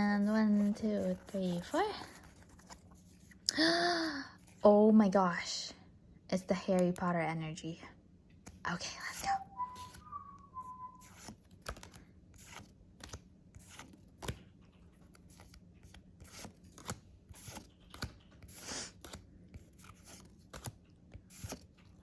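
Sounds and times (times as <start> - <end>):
trading cards clicking and rustling: 11.0 - 22.0.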